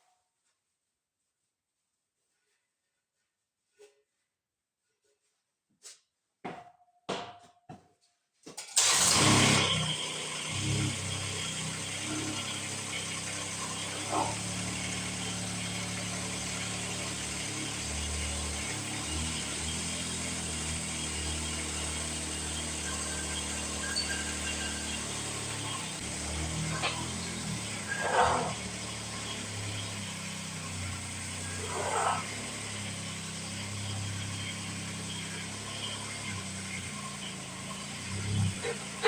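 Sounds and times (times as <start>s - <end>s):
engine starting and running: 8.6s - 39.0s.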